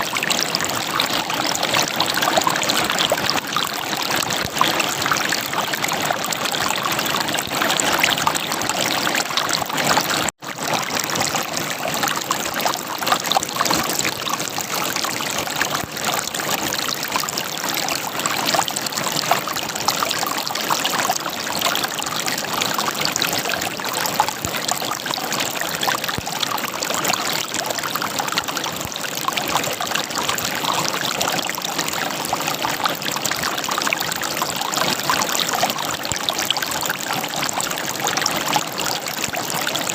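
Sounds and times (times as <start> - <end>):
river water gurgling over rocks: 0.0 - 39.9.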